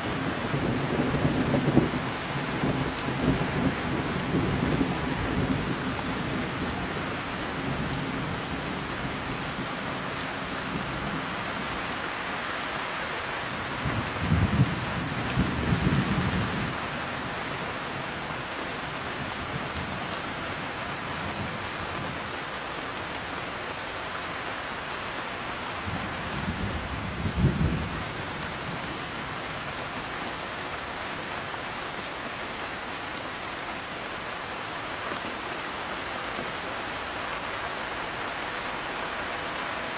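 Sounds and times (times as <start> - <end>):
heavy rain falling: 0.0 - 39.9
rolling thunder rumbling: 25.9 - 28.9.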